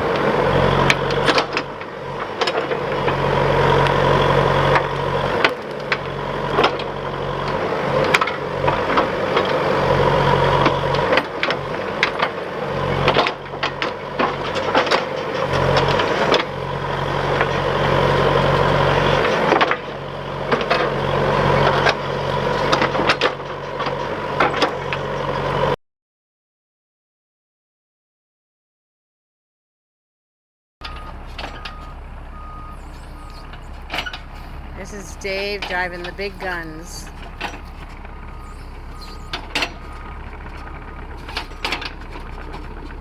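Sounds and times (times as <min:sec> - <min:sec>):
engine running: 0:00.0 - 0:25.8, 0:30.8 - 0:43.0
machinery knocks and clanks: 0:32.6 - 0:43.0.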